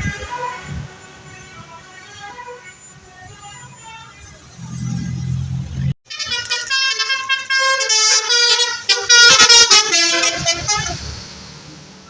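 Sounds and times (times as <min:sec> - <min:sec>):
musical bus horn playing tune: 0:00.0 - 0:11.0
low engine rumble: 0:03.0 - 0:06.8.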